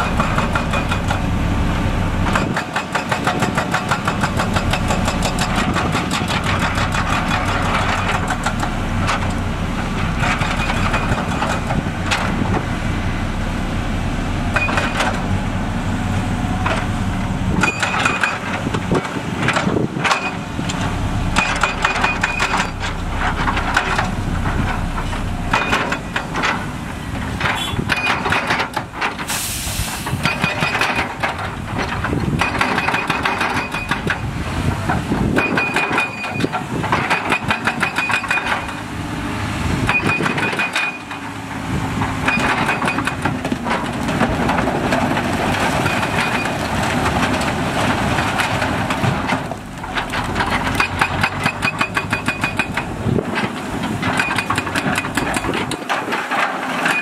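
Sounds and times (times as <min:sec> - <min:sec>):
diesel machinery running: 0:00.0 - 0:57.0
rock and steel clanking: 0:02.2 - 0:12.7, 0:16.5 - 0:38.8, 0:39.8 - 0:57.0
burst of hiss: 0:29.3 - 0:30.2.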